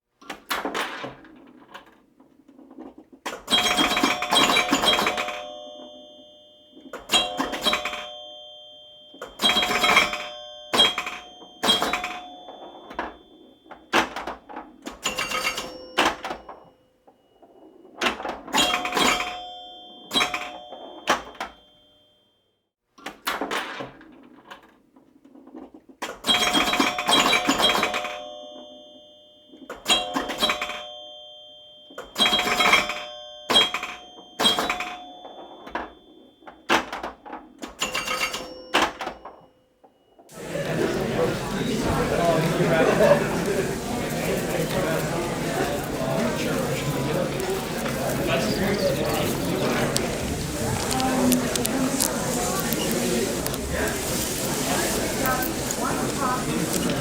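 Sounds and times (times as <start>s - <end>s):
bell-like ringing strikes: 3.6s - 13.4s.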